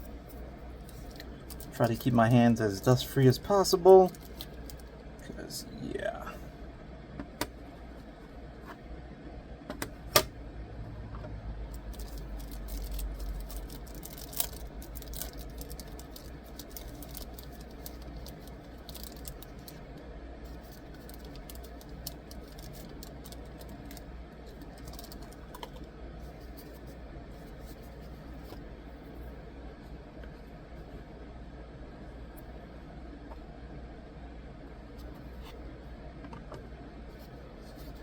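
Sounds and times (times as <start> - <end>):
steady low hum: 0.0 - 38.0
small hard items clicking and rattling: 4.0 - 4.9, 11.8 - 19.8, 20.6 - 25.8.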